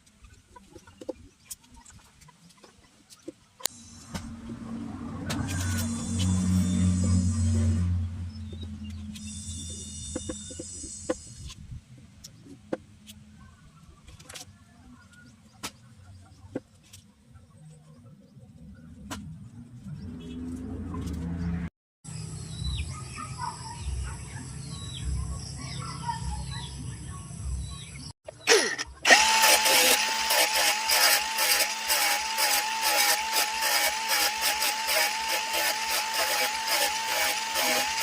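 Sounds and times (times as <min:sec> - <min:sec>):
low hum: 0:03.7 - 0:12.0
birds chirping: 0:12.2 - 0:29.1.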